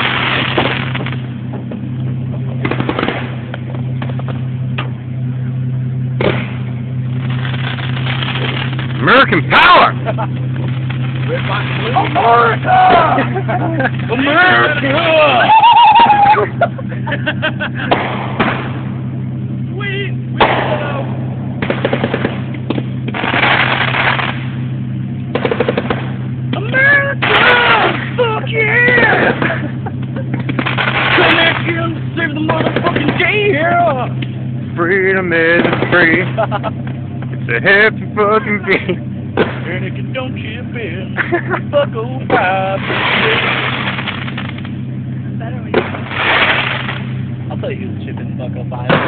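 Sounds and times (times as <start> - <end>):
firework cake firing volleys: 0.0 - 16.4, 17.2 - 47.9
steady low hum: 0.0 - 49.0
firework cake pops: 6.2 - 6.7.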